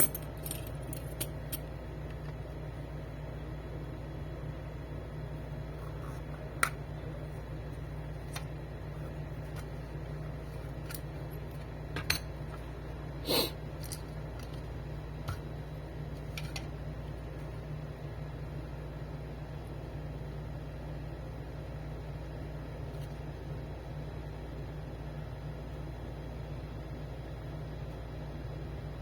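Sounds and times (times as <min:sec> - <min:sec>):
tools and small parts clicking: 0:00.0 - 0:01.7
steady low hum: 0:00.0 - 0:29.0.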